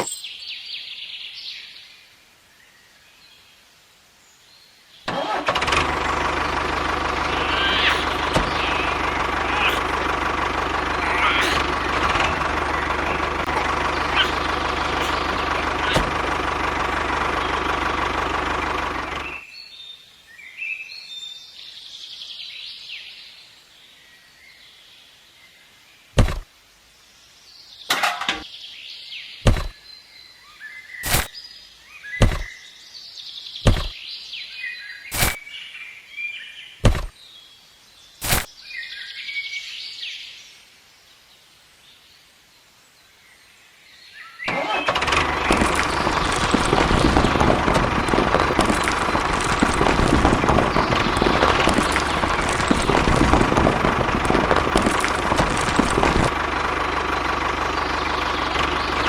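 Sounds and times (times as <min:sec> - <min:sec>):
birds chirping: 0:00.0 - 0:02.0, 0:04.6 - 0:21.0, 0:26.1 - 0:40.4, 0:43.3 - 0:59.0
sharp knocks: 0:26.2 - 0:26.4, 0:29.4 - 0:29.7, 0:32.2 - 0:32.5, 0:33.6 - 0:34.0, 0:36.8 - 0:37.1.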